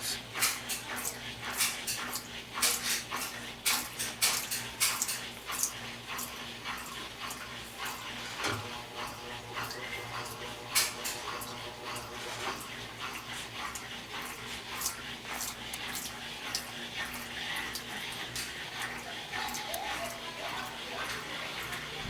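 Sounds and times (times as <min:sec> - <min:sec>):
washing machine clicking and knocking: 0:00.0 - 0:22.0.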